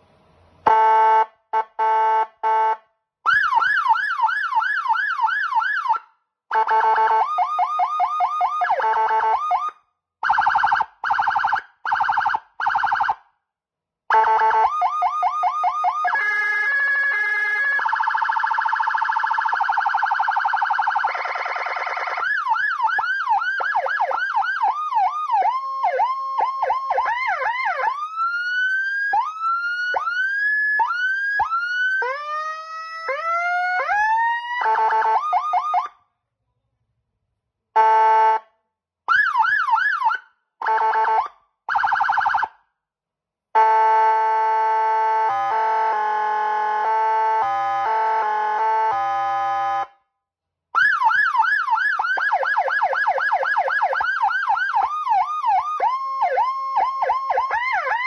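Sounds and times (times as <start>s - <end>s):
electronic siren: 2.5s - 13.2s, 14.1s - 36.0s, 43.6s - 49.9s, 50.8s - 58.0s.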